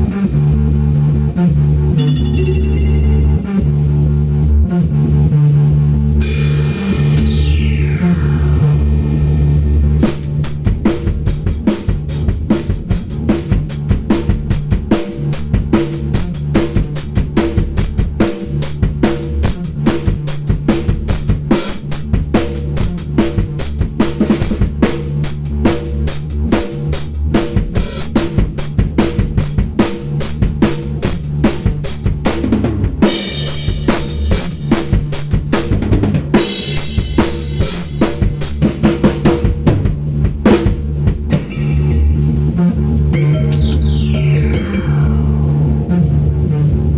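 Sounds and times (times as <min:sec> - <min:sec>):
backing track bass notes: 0:00.0 - 0:46.9
drum kit playing: 0:02.0 - 0:03.9, 0:06.2 - 0:44.9
cymbals ringing: 0:02.0 - 0:04.0.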